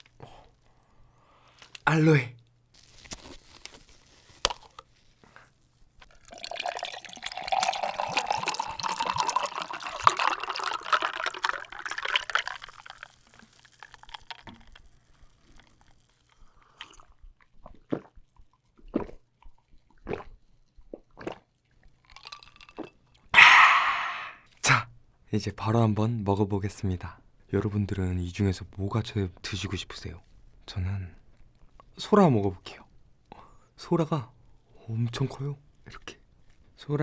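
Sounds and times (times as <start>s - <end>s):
drink pouring into a glass: 6.0s - 17.2s, 21.0s - 24.3s.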